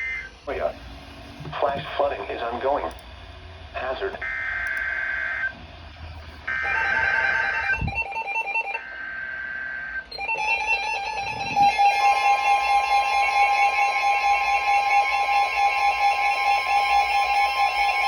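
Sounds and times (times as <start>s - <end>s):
harsh data tone bursts: 4.2s - 5.6s, 6.5s - 17.9s
two-tone attention alarm: 4.2s - 5.6s, 6.5s - 18.0s.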